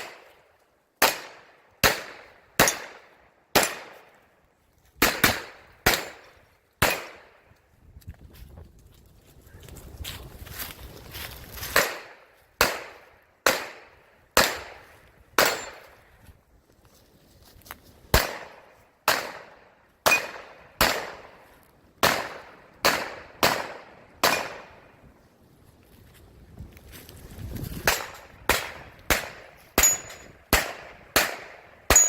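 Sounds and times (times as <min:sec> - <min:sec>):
pistol shots echoing: 0:01.0 - 0:04.1, 0:05.0 - 0:07.4, 0:11.8 - 0:14.8, 0:15.4 - 0:15.8, 0:18.2 - 0:21.4, 0:22.0 - 0:24.8, 0:27.9 - 0:32.0.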